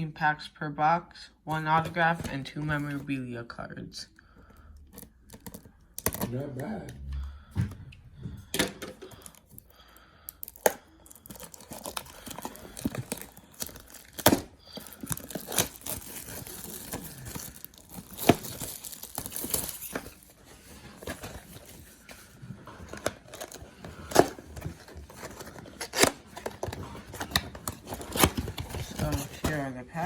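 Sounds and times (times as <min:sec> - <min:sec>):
packaging tearing and crinkling: 0:10.3 - 0:29.6.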